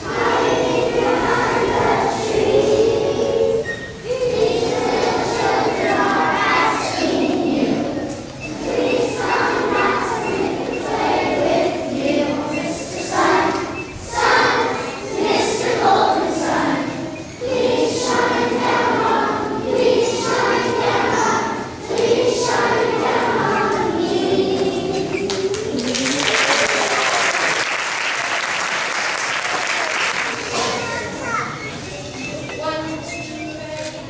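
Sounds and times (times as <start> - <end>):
group singing: 0.0 - 27.4
applause: 25.5 - 30.6.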